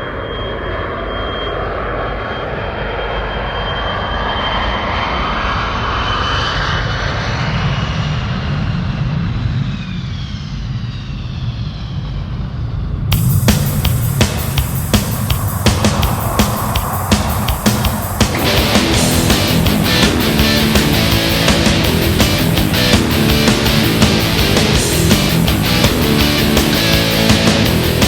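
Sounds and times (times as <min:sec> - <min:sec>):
jet aircraft passing by: 0:00.0 - 0:28.0
loud music with hard drums: 0:13.1 - 0:28.0.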